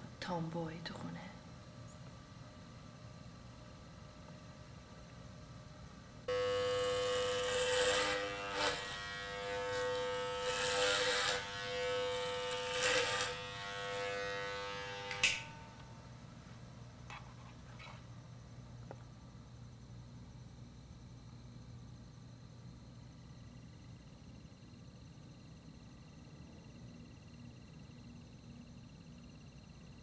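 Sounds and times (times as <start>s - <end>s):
electric hair clippers buzzing: 6.3s - 16.0s.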